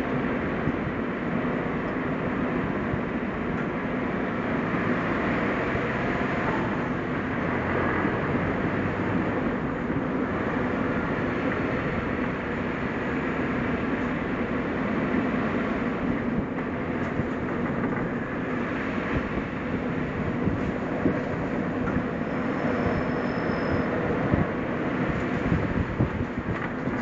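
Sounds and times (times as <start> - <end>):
car engine: 0.0 - 27.0
road noise: 0.0 - 27.0.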